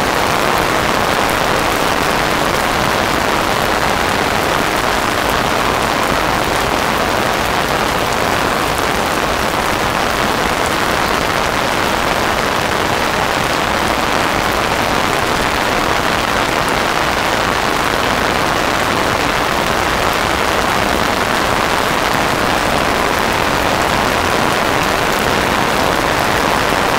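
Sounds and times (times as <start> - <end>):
heavy rain falling: 0.0 - 26.9.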